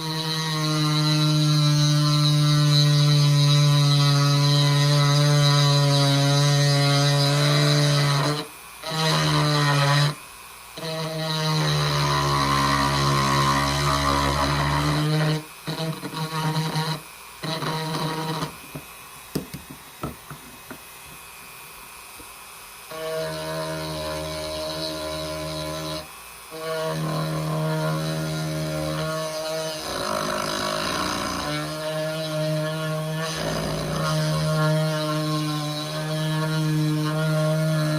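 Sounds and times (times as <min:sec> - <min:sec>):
power tool humming: 0:00.0 - 0:37.9.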